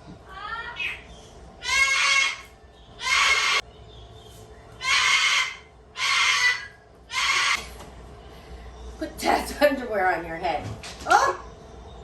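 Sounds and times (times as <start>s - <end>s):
parrot squawking: 0.4s - 3.7s, 4.8s - 7.6s.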